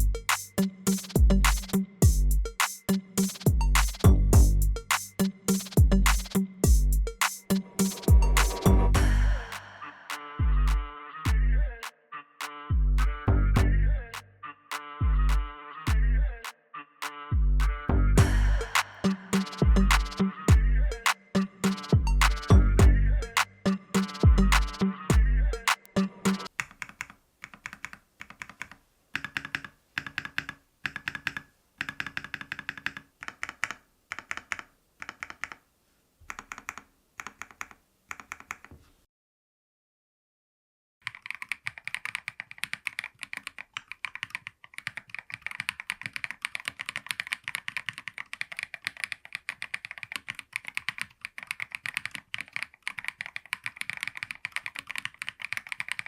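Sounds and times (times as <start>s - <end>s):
fast keyboard typing: 26.5s - 35.6s, 36.3s - 38.7s, 41.0s - 56.0s.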